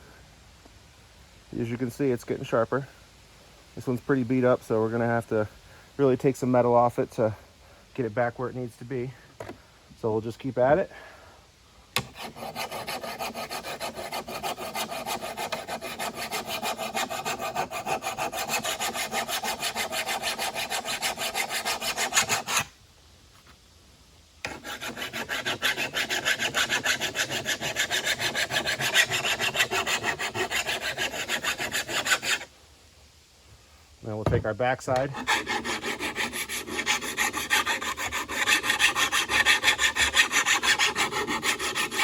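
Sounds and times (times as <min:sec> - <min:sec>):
file rasping on steel blade: 0:12.0 - 0:22.7, 0:24.4 - 0:32.5, 0:35.1 - 0:42.0.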